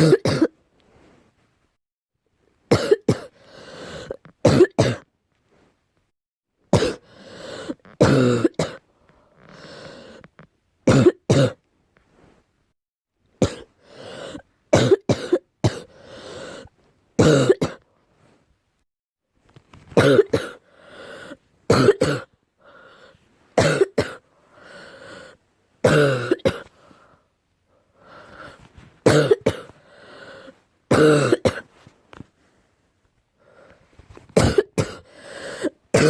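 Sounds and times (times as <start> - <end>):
deep coughing: 0.0 - 0.5, 2.7 - 5.0, 6.8 - 8.8, 10.9 - 11.6, 13.4 - 16.0, 17.2 - 17.8, 20.0 - 20.6, 21.7 - 22.4, 23.6 - 24.3, 25.8 - 26.8, 29.0 - 29.8, 30.9 - 31.8, 34.4 - 36.0.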